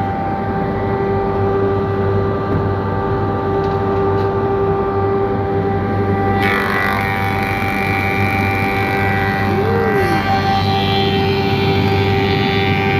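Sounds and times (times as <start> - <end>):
planer machine whining: 5.1 - 12.9.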